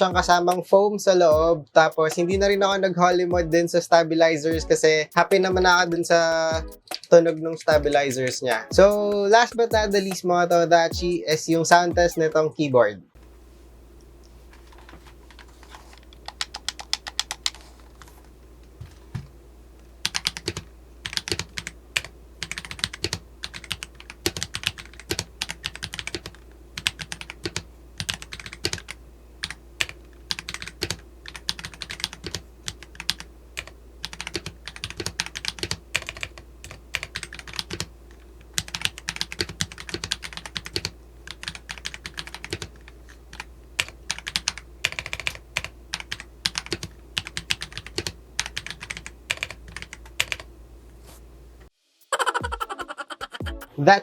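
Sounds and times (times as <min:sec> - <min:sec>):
mechanical keyboard typing: 0:14.8 - 0:18.1, 0:20.0 - 0:50.5.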